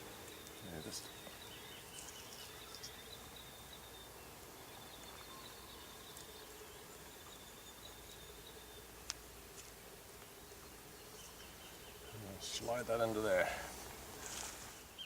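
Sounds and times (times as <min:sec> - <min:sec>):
high insect trill: 0:00.0 - 0:09.8
faint soft clicks: 0:09.0 - 0:10.3.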